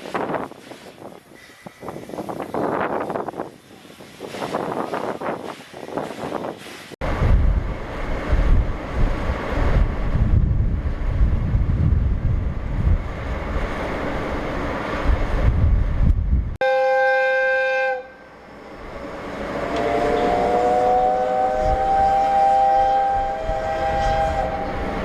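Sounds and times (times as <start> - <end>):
wind buffeting microphone: 0.0 - 16.6, 18.8 - 25.0
steam locomotive whistle: 16.6 - 18.3, 19.7 - 25.0.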